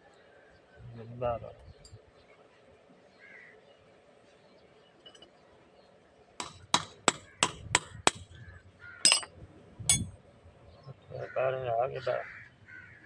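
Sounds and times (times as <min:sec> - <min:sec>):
hammer blows on metal: 0:09.1 - 0:10.2.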